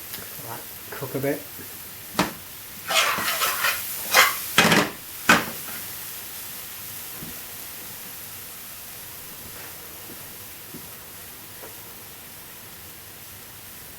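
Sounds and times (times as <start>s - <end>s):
spices sizzling in a pan: 0.0s - 13.9s
utensil knocking and scraping pan: 2.9s - 5.0s.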